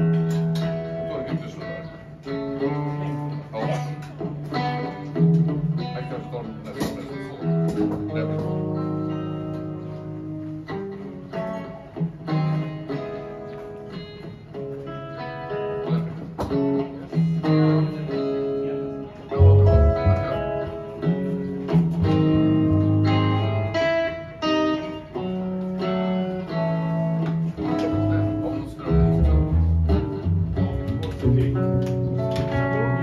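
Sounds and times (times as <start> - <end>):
guitar picking and chords: 0.0 - 33.0
heavy bass line: 19.4 - 20.8, 28.9 - 33.0.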